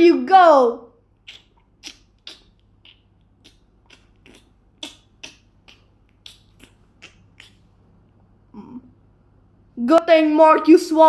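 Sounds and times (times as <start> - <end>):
person chewing: 1.2 - 7.8
sharp mouth clicks: 1.2 - 8.9.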